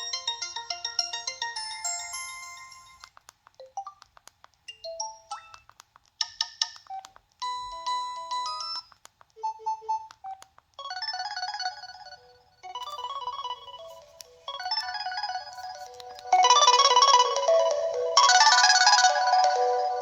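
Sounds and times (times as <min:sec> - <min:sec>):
phone ringtone melodies: 0:00.0 - 0:03.9, 0:04.7 - 0:05.6, 0:07.4 - 0:20.0.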